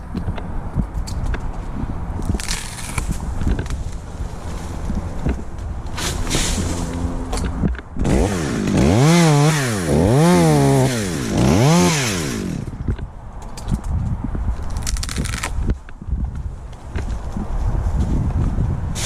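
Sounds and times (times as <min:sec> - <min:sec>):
chainsaw revving: 0:08.0 - 0:12.8.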